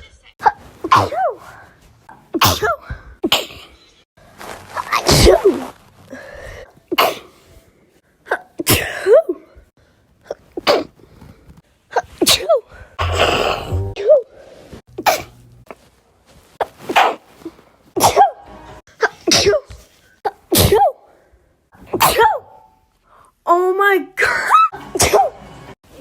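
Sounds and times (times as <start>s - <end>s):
woman sneezing: 0.4s - 1.5s, 2.3s - 3.6s, 5.0s - 5.6s, 7.0s - 7.4s, 12.2s - 13.7s, 15.0s - 15.3s, 18.0s - 18.4s, 19.0s - 19.8s, 20.5s - 21.0s, 21.9s - 22.6s.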